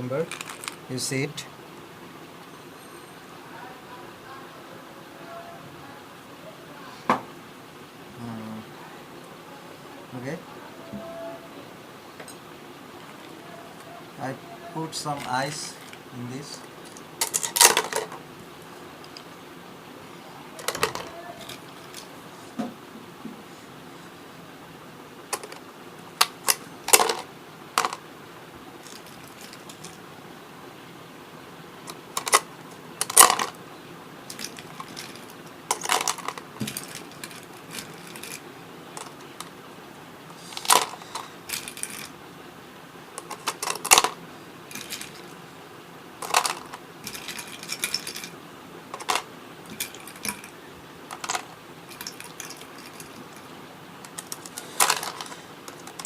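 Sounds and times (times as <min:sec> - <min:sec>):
ice cubes clattering into plastic box: 0:00.2 - 0:00.8, 0:16.9 - 0:18.2, 0:20.6 - 0:22.1, 0:26.2 - 0:28.0, 0:31.9 - 0:33.6, 0:34.3 - 0:38.4, 0:40.6 - 0:42.1, 0:43.2 - 0:45.3, 0:46.2 - 0:48.3, 0:49.0 - 0:50.5, 0:51.1 - 0:53.4, 0:54.1 - 0:56.0.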